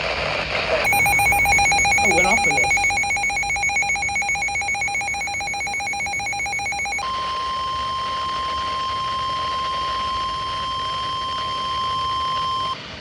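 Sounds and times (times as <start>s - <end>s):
pulsing multi-tone alarm beep: 0.8s - 7.0s
steady alarm tone: 0.8s - 7.0s.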